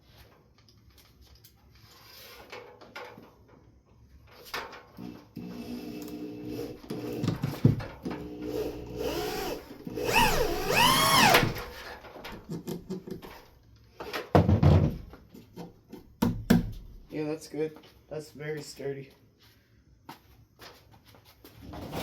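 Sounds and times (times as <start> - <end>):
power drill driving screws: 8.2 - 11.9.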